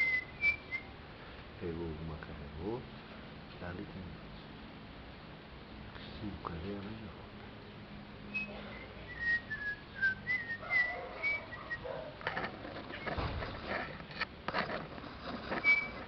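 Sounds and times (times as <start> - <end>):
short whistled notes: 0.0 - 0.9, 8.3 - 11.9, 15.5 - 16.0
rustling: 10.9 - 16.0.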